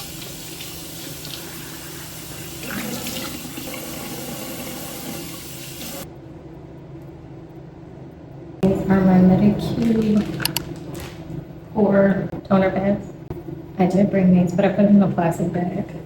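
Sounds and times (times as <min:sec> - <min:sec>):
faucet running into sink: 0:00.0 - 0:06.0.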